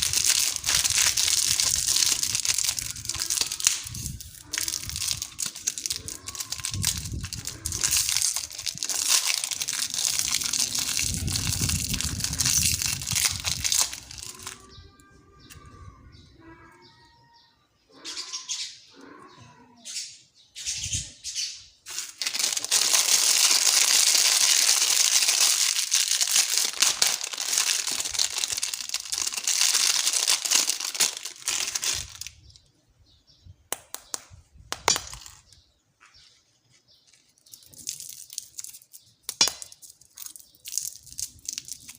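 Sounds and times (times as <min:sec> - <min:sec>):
candy wrappers crinkling: 0:00.0 - 0:14.8, 0:21.9 - 0:32.7, 0:37.1 - 0:41.9.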